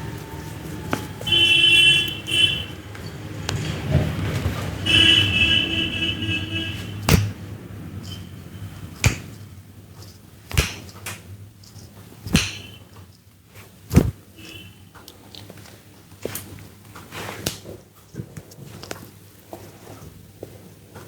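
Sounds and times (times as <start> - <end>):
hands smacking a head: 9.0 - 9.4, 10.5 - 11.2, 12.3 - 12.8.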